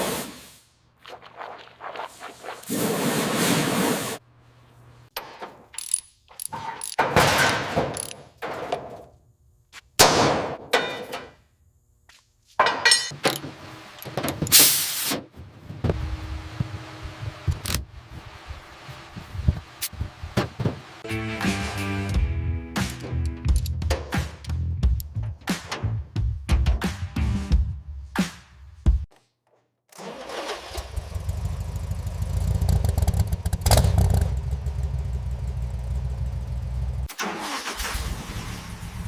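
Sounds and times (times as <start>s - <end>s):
sharp metal clanks: 12.6s - 13.2s
music: 21.0s - 29.1s.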